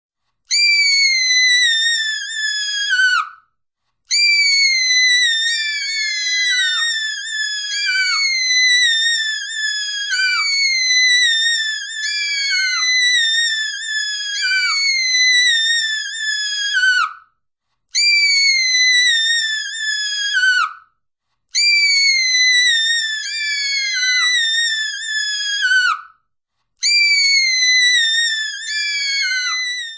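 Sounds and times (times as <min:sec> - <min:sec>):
woman screaming: 0:00.5 - 0:03.4, 0:04.1 - 0:17.2, 0:21.6 - 0:26.1, 0:26.8 - 0:29.9.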